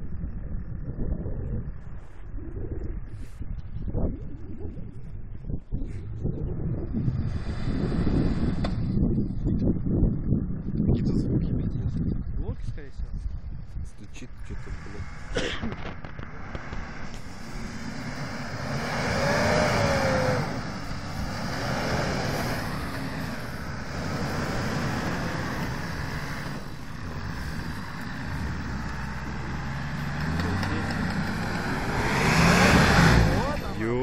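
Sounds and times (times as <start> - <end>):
off-road vehicle engine revving: 6.6 - 11.8, 14.0 - 34.0.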